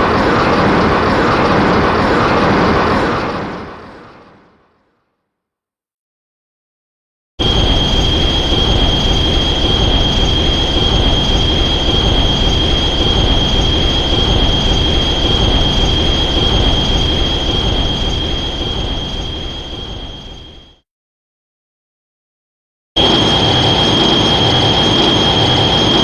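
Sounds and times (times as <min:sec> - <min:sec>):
loud rushing noise: 0:07.4 - 0:20.4.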